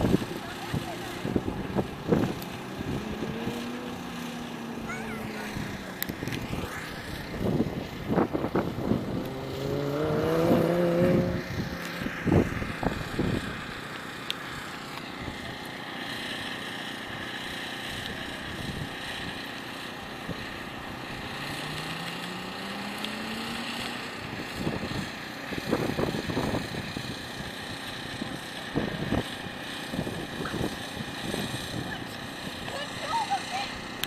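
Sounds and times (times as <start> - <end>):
wind buffeting the microphone: 0.0 - 3.8, 5.5 - 13.8, 24.2 - 32.7
faint engine rising in pitch: 0.0 - 34.0.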